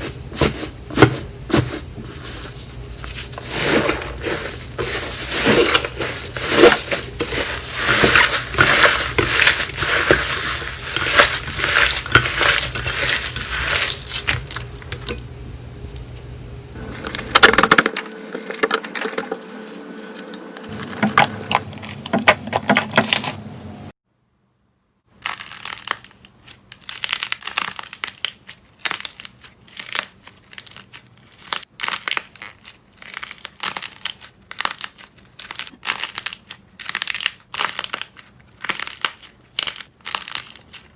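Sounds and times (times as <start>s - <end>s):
slime crackling and popping: 25.1s - 40.9s.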